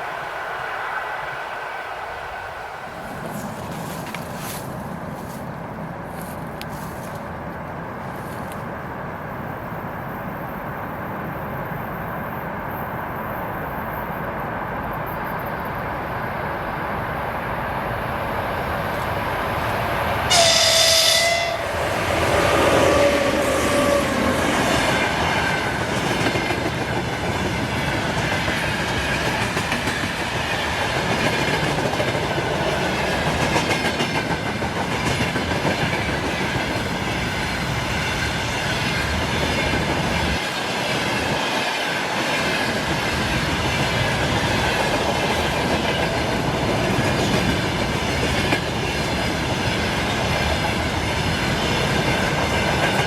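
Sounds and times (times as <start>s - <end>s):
electric train approaching: 0.0s - 53.0s
train wheels clickety-clack: 3.1s - 5.5s, 21.7s - 53.0s
train horn blast: 20.3s - 24.8s.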